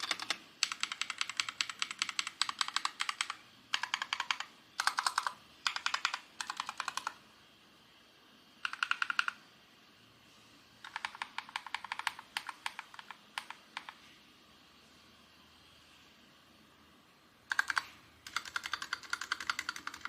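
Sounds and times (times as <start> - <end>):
mechanical keyboard typing: 0.0 - 7.2, 8.6 - 9.4, 10.8 - 14.0, 17.5 - 20.0.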